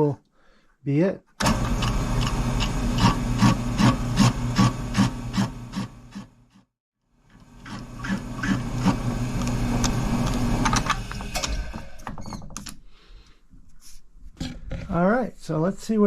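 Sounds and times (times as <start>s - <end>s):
milling machine humming: 1.4s - 6.1s, 7.3s - 12.1s.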